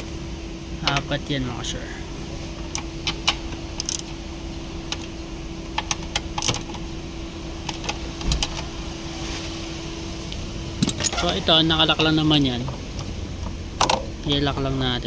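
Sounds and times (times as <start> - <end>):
steady hum: 0.0 - 15.0
metal bolts and tools clinking: 2.7 - 4.1, 10.8 - 11.3.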